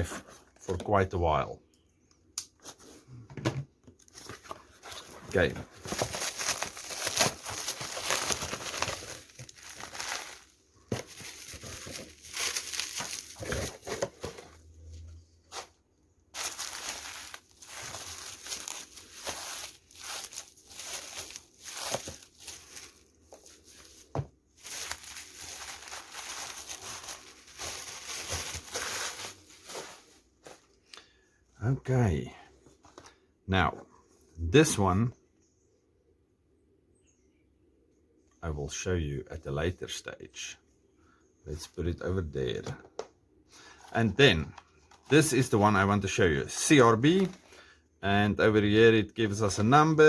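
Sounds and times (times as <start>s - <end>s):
packaging crinkling and tearing: 5.3s - 14.6s, 16.4s - 30.2s.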